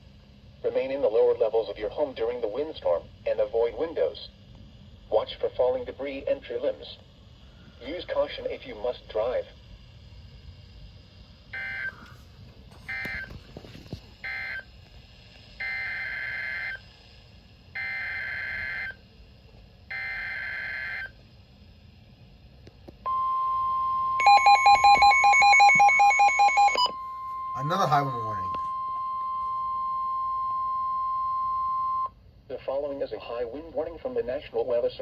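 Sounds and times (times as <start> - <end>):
rapidly pulsing alarm tone: 10.4 - 14.7, 15.6 - 19.2, 19.8 - 21.2, 23.1 - 32.3.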